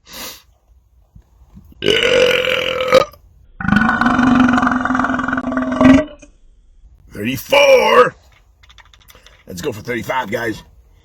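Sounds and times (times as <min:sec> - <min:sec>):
man belching: 0:01.8 - 0:06.3.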